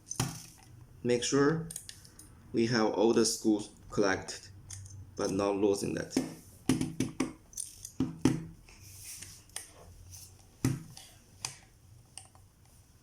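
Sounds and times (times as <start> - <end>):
tiny metal screws clicking: 1.7 - 2.3.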